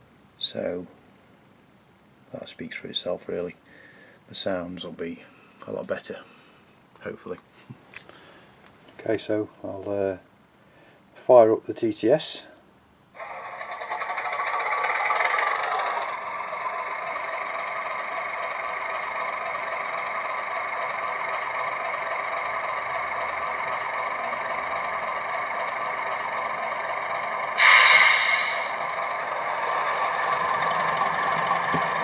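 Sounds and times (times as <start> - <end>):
diesel engine sound from small speaker: 13.2 - 32.0.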